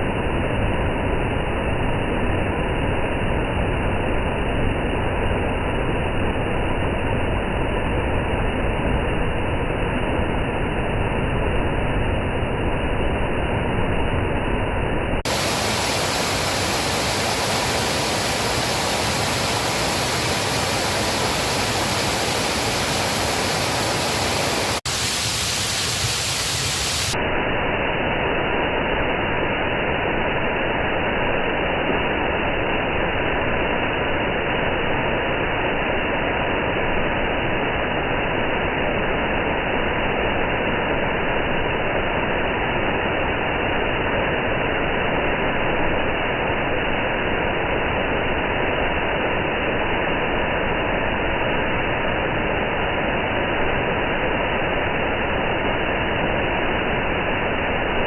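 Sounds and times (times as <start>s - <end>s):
waterfall rushing: 15.2s - 27.2s.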